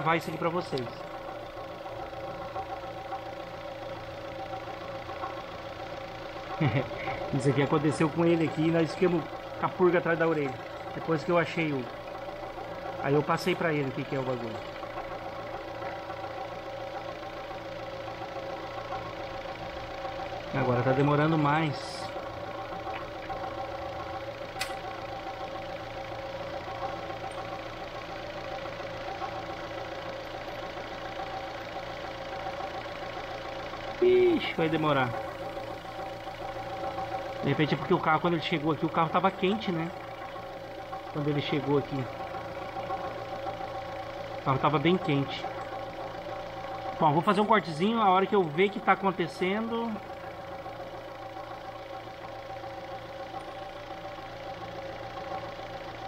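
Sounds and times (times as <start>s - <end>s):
pickup engine idling: 0.0s - 56.0s.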